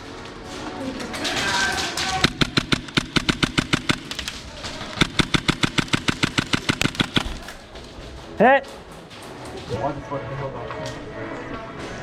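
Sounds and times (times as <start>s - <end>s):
airsoft gun firing rapidly: 2.0s - 7.6s.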